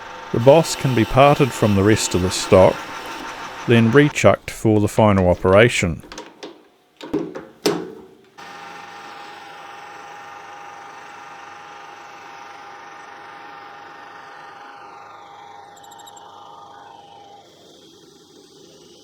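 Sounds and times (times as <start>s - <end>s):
metal lathe whining: 0.0s - 17.5s
short knocks: 5.2s - 8.4s.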